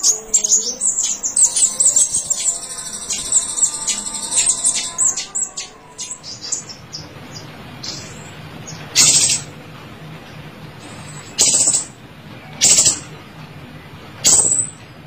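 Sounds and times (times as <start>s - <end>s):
songbird chirping: 0.0s - 9.5s.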